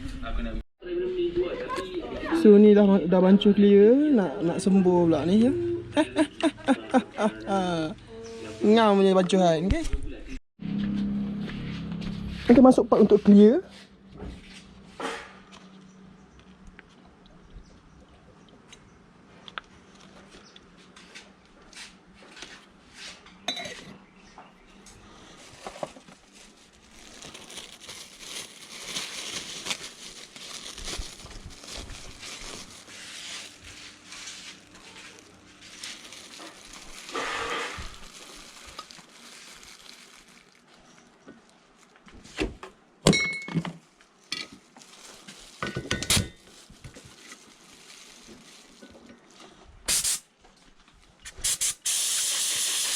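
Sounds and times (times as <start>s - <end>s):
rustling: 24.9s - 42.4s, 44.0s - 49.8s.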